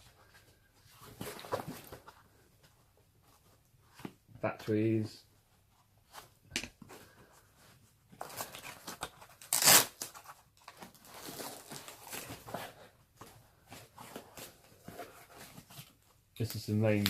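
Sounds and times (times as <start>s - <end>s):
packaging rustling: 8.2s - 12.9s
packaging tearing: 9.4s - 10.2s.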